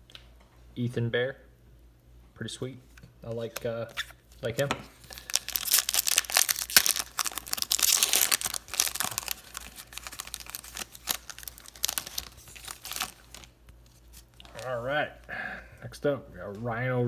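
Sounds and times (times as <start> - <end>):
cards rustling: 3.4 - 15.3
wrapper tearing and crinkling: 3.9 - 14.8.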